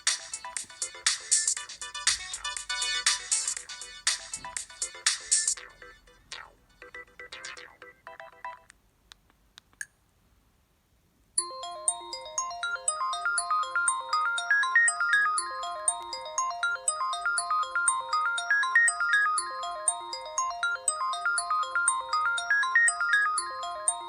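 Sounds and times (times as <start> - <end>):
polyphonic phone ringtone: 6.8 - 8.7, 11.4 - 24.0.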